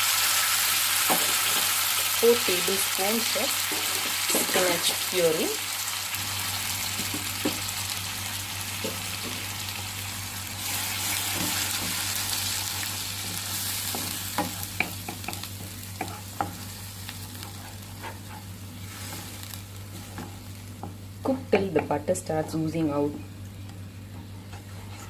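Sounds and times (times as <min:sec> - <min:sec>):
puree sizzling in butter: 0:00.0 - 0:20.9.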